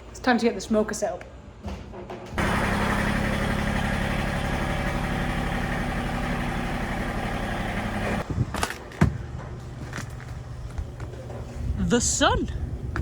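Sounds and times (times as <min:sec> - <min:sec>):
engine idling: 0:02.4 - 0:08.2.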